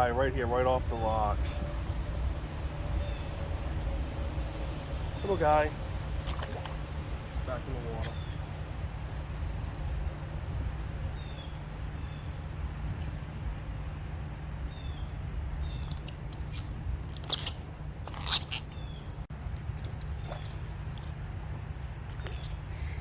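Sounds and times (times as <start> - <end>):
steady low rumble: 0.0 - 23.0
small bird chirping: 7.9 - 13.7, 14.6 - 19.2, 20.1 - 23.0.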